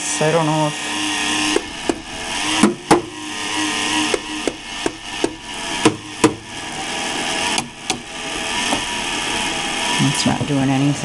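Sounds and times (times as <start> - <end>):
computer grinding and rasping: 0.4 - 11.0
sharp clicks and knocks: 4.1 - 6.4, 7.5 - 8.1.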